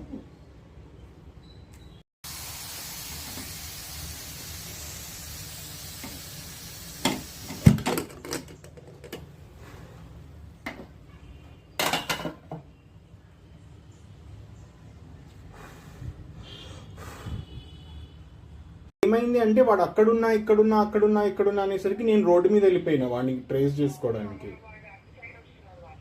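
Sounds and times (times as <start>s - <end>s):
cooking pot hissing: 2.2s - 7.8s.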